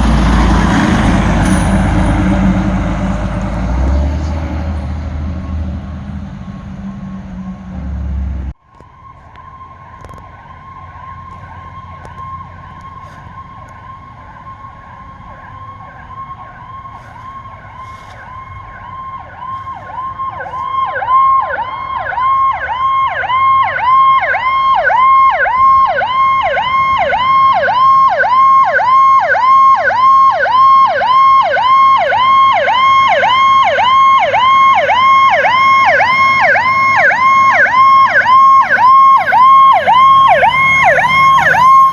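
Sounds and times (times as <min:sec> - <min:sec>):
steady siren tone: 0:00.0 - 0:41.9
emergency siren yelping: 0:06.4 - 0:41.9.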